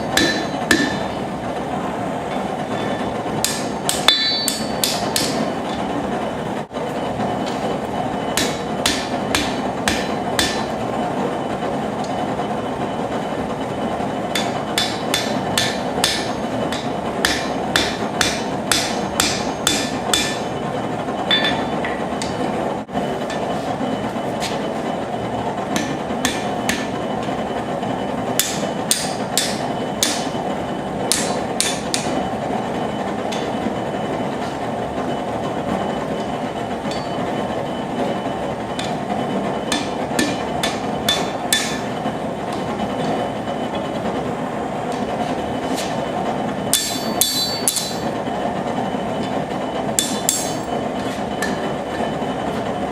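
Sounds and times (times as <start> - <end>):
hammer striking metal on anvil: 0.0 - 1.1, 2.3 - 5.8, 8.4 - 10.7, 14.3 - 20.5, 21.3 - 22.4, 25.8 - 27.0, 28.4 - 30.4, 31.1 - 32.2, 36.9 - 37.2, 38.8 - 39.0, 39.7 - 41.9, 46.7 - 48.1, 50.0 - 50.7
propane forge roar: 0.0 - 52.9.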